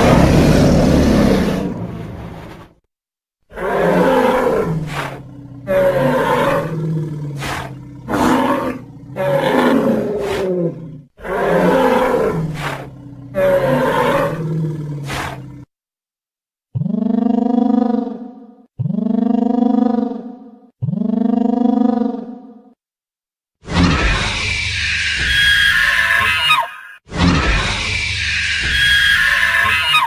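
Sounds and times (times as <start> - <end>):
dinosaur growling roars: 0.0 - 2.7, 3.5 - 15.7.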